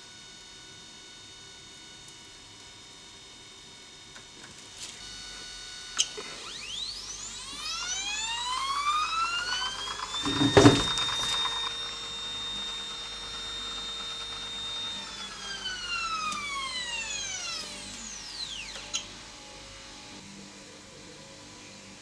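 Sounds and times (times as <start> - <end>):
stepper motor whining: 5.1 - 19.0
loud knock: 10.2 - 11.4.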